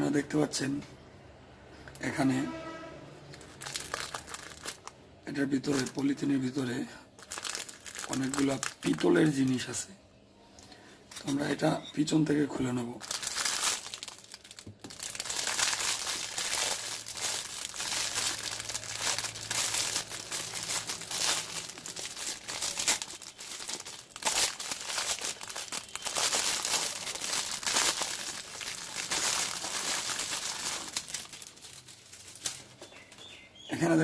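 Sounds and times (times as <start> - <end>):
plastic bag crinkling and tearing: 3.3 - 6.5, 7.1 - 9.7, 13.0 - 33.2.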